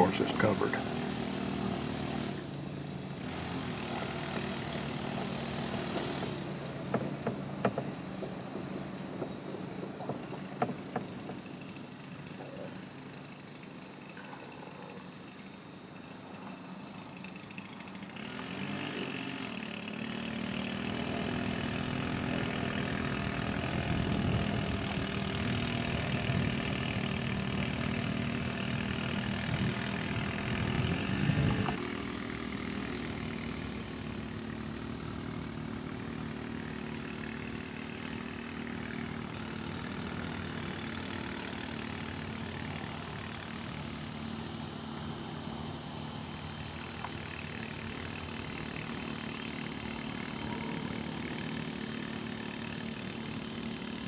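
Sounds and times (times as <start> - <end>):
small engine running: 0.0 - 54.0.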